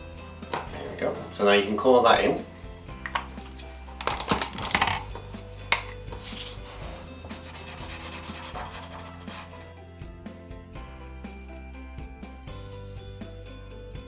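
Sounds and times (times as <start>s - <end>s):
felt-tip pen scribbling on card: 5.7s - 9.7s.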